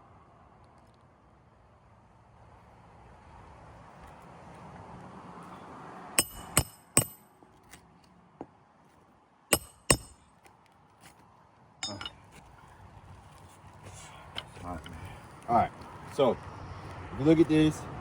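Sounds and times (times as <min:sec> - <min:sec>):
hammer striking metal: 0:06.2 - 0:07.3, 0:09.5 - 0:10.2, 0:11.8 - 0:12.2.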